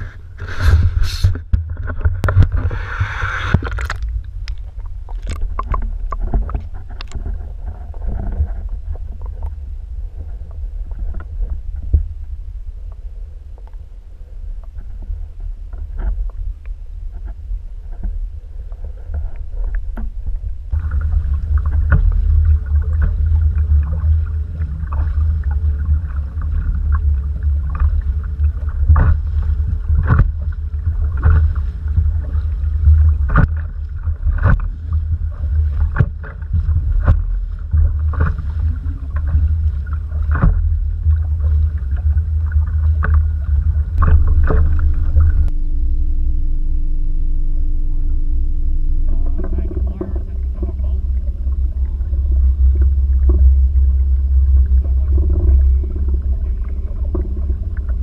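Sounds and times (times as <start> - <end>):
heavy low rumble: 0.0 - 58.0
steady hum: 0.0 - 58.0
knocks against canoe hull: 35.8 - 38.4.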